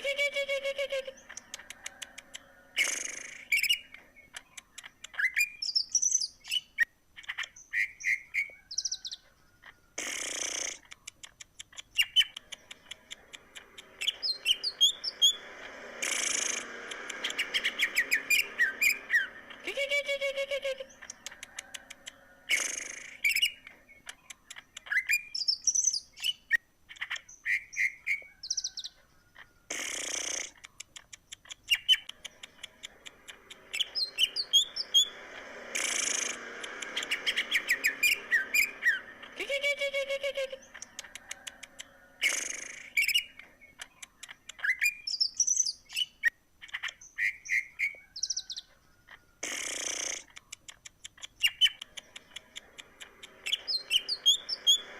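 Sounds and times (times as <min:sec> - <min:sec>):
bird singing: 0:00.0 - 0:54.9
short harsh noisy bursts: 0:13.4 - 0:21.6, 0:29.7 - 0:30.6, 0:32.7 - 0:41.0, 0:49.4 - 0:50.3.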